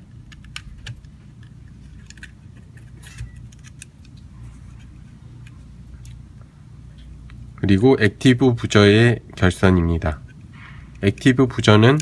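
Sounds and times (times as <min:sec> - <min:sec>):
steady low hum: 0:00.0 - 0:12.0
cable connectors clicking and rattling: 0:00.1 - 0:04.2, 0:10.1 - 0:12.0.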